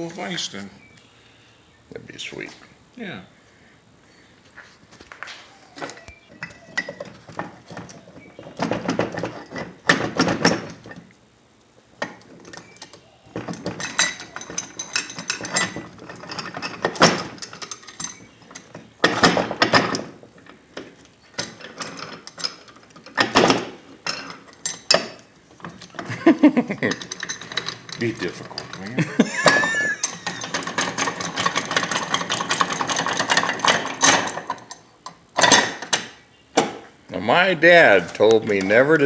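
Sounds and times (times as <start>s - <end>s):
metal vise clicking and clanking: 6.0s - 11.0s, 12.0s - 20.2s, 21.3s - 36.8s.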